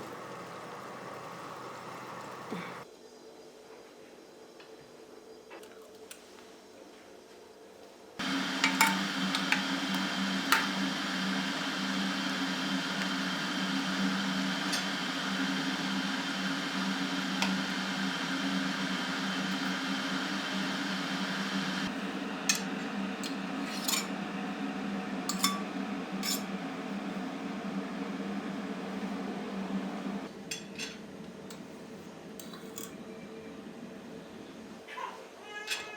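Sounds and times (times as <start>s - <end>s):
kitchen appliance motor humming: 0.0s - 2.8s, 8.2s - 30.3s
dishes clinking: 8.5s - 9.7s.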